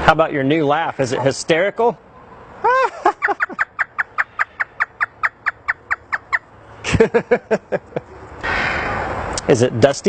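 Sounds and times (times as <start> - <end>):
parrot mimicking a laugh: 2.6 - 6.3.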